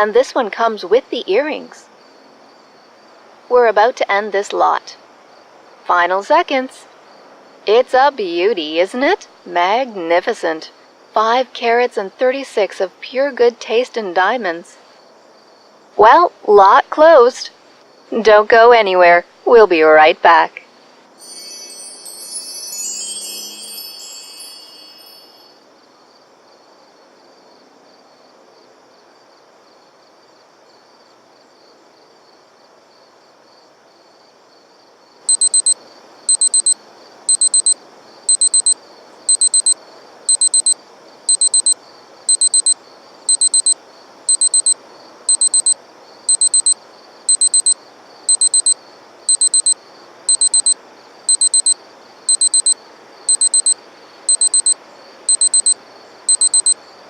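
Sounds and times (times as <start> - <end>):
low steady hiss: 0.0 - 57.0
bright chime jingle: 21.2 - 25.6
digital alarm clock beeping: 35.3 - 56.8.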